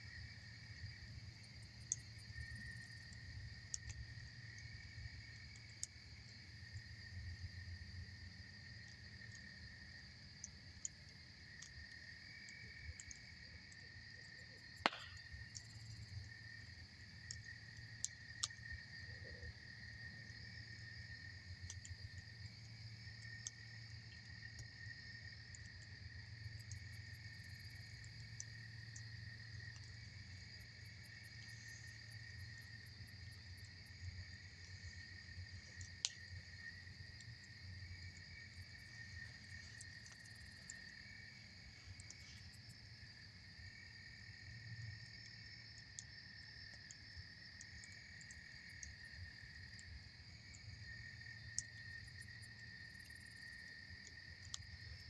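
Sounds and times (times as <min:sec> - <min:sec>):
insects chirring: 0:00.0 - 0:55.0
campfire crackling and popping: 0:00.8 - 0:42.2.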